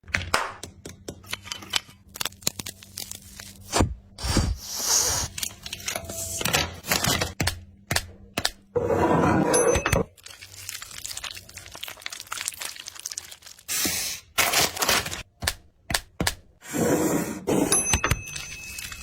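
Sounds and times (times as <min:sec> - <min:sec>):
packaging tearing and crinkling: 0:02.1 - 0:06.0, 0:10.2 - 0:15.3.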